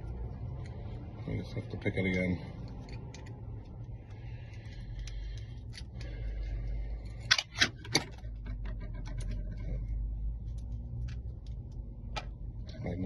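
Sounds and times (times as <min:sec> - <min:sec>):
steady low hum: 0:00.0 - 0:13.0
lock pick clicking and scraping: 0:02.0 - 0:09.9.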